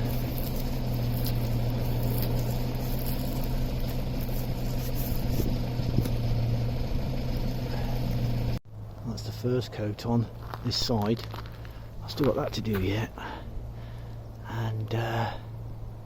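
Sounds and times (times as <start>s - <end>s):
motor humming: 0.0s - 8.6s.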